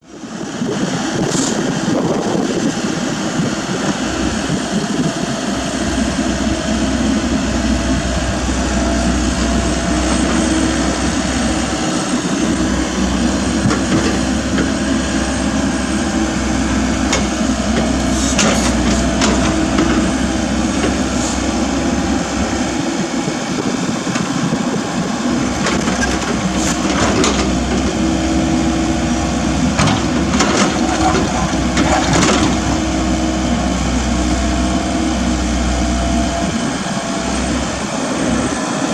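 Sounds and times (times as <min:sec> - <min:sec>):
excavator engine humming: 0:00.2 - 0:38.9
excavator knocks and clanks: 0:08.8 - 0:22.7, 0:23.4 - 0:33.8.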